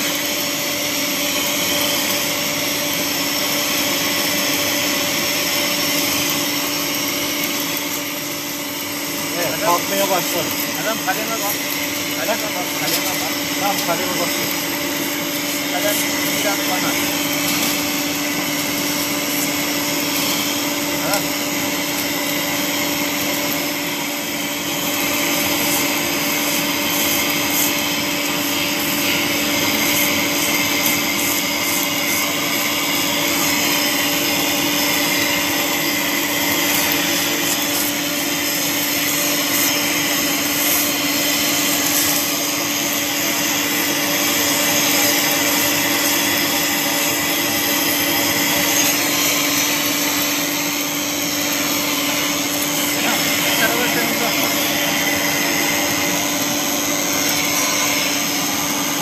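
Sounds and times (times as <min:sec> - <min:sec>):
welding machine humming: 0:00.0 - 0:59.0
whirring hiss: 0:00.0 - 0:59.0.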